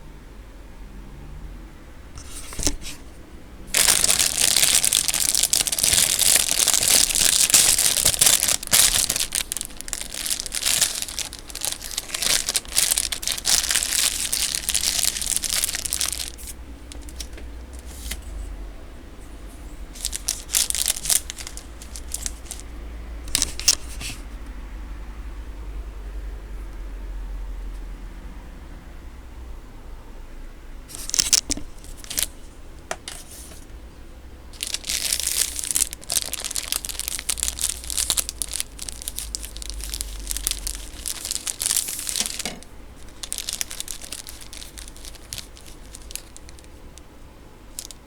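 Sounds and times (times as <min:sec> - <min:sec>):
plastic wrapper crinkling: 0:02.2 - 0:03.1, 0:03.7 - 0:18.3, 0:19.9 - 0:24.2, 0:30.9 - 0:33.6, 0:34.6 - 0:47.1, 0:47.7 - 0:48.0.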